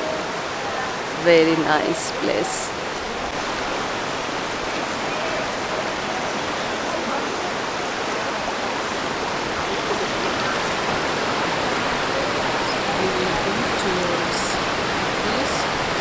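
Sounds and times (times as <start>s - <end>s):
water rushing over rocks: 0.0s - 16.0s.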